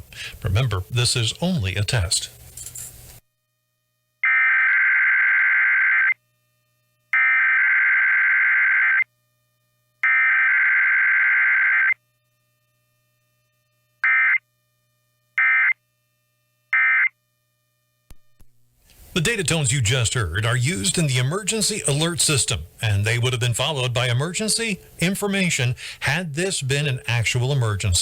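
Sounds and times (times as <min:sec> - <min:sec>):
buzzy digital data bursts: 0:19.1 - 0:28.0.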